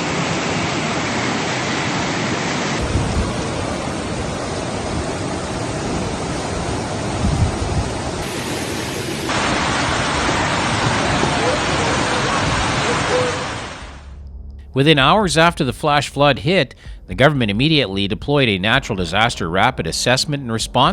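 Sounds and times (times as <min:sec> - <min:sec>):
floodwater rushing: 0:00.0 - 0:14.1.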